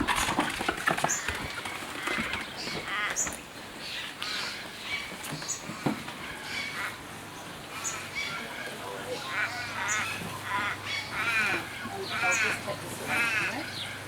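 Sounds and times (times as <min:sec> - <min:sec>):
rasping bird calls: 0:01.1 - 0:14.0
bird chirps: 0:06.4 - 0:14.0.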